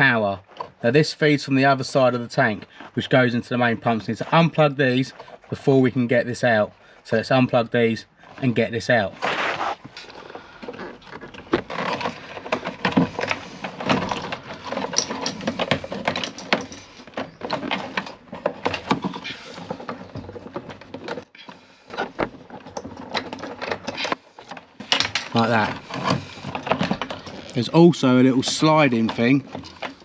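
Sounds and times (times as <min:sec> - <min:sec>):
plastic connectors clicking and rattling: 0:10.0 - 0:21.3.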